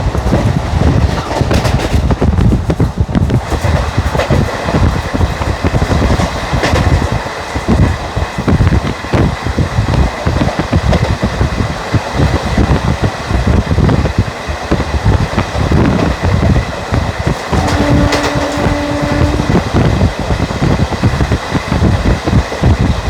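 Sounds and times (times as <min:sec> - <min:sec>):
train wheels rumbling on rails: 0:00.0 - 0:23.0
coach rattling: 0:15.5 - 0:20.1
locomotive horn: 0:17.5 - 0:19.8.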